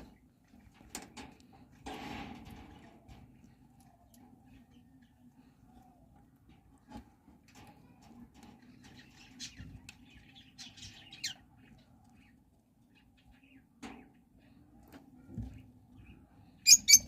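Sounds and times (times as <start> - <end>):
lovebirds chirping: 16.0 - 17.0.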